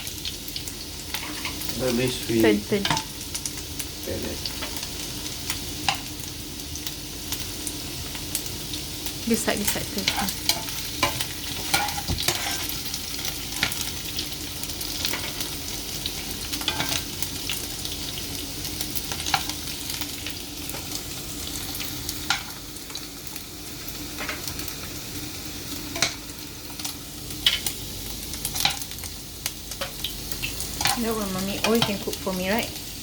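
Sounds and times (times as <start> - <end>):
meatballs sizzling in a pan: 0.0 - 33.0
utensil clicking and scraping pan: 10.0 - 12.8.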